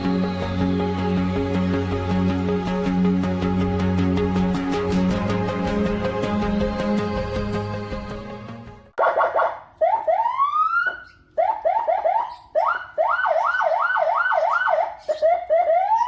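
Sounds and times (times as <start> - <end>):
electronic vehicle siren: 0.0 - 2.6, 9.0 - 16.0.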